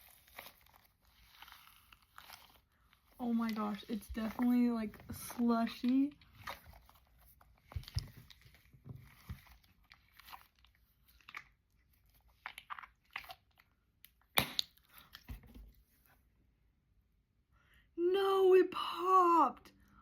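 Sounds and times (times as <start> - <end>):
sharp crack: 14.4 - 14.8.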